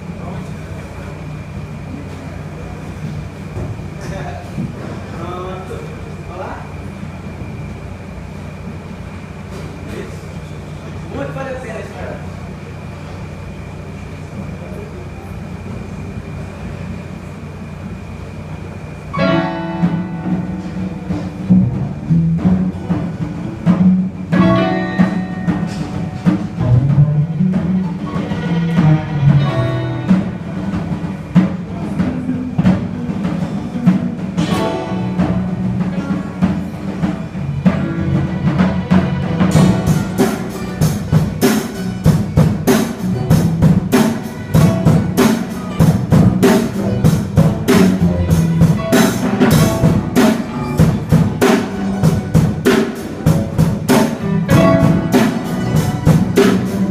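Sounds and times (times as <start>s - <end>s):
low background noise: 0.0s - 56.9s
drum kit beat: 19.2s - 56.9s
instrumental music with percussion: 19.2s - 56.9s.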